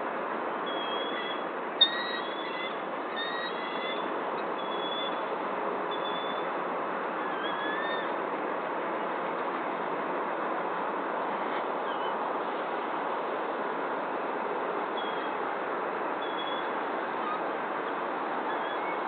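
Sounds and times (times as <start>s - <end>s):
thin bird whistles: 0.7s - 4.0s, 4.6s - 5.2s, 5.9s - 6.5s, 16.2s - 16.7s, 18.5s - 19.0s.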